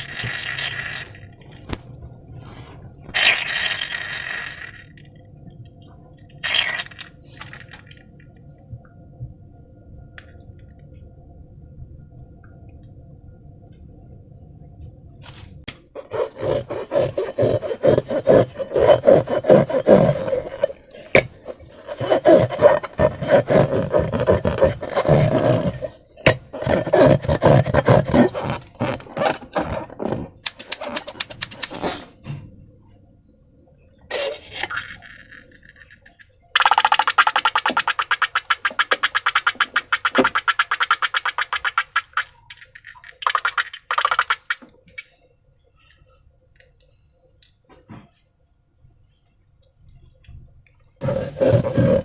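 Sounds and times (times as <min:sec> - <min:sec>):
faint steady hum: 0:00.0 - 0:52.0
slime squelching and crackling: 0:16.0 - 0:32.0, 0:36.6 - 0:42.4.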